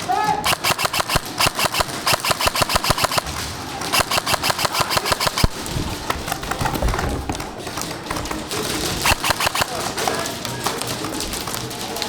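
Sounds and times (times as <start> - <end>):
airsoft guns firing rapidly: 0.0 - 11.2
sharp loud crack: 4.0 - 5.7.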